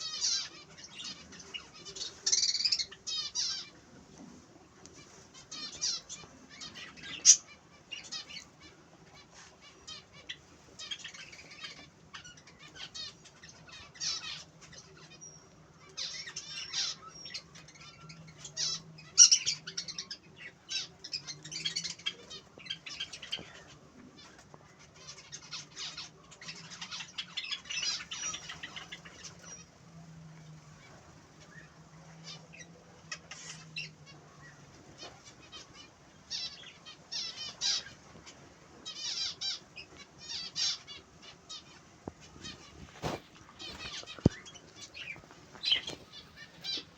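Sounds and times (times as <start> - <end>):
faint low hum: 0.0 - 46.9
finches chirping: 30.8 - 46.9.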